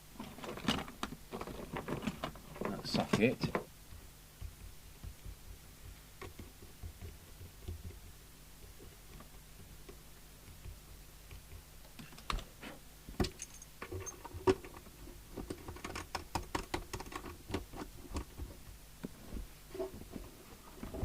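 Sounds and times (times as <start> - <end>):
light irregular clicks and taps: 2.6 - 12.5, 15.4 - 19.4.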